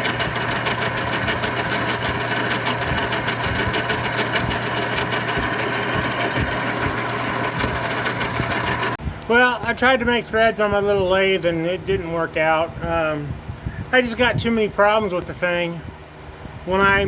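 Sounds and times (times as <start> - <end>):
lathe motor hum: 0.0 - 9.0
rapid mechanical clatter: 0.0 - 9.0.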